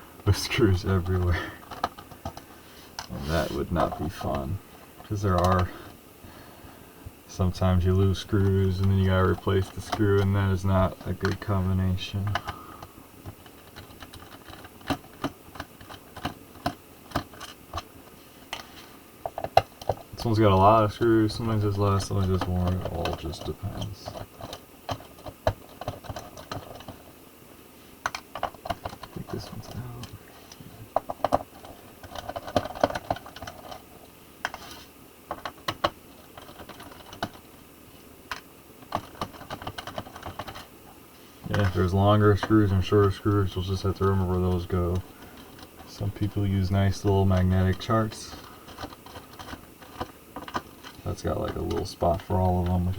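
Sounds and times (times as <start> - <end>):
screwdriver clicking on plastic: 38.3 - 40.7.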